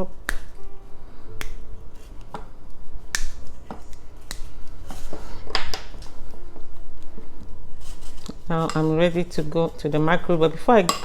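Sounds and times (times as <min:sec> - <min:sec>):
chocolate bar snapping: 0:00.2 - 0:00.6, 0:01.4 - 0:01.6, 0:03.1 - 0:04.6.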